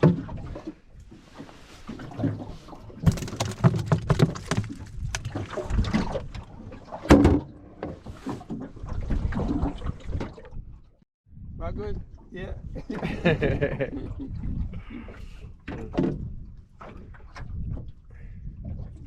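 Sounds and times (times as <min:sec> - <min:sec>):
knocks and clatter on a boat: 0:00.0 - 0:10.8, 0:15.5 - 0:19.0.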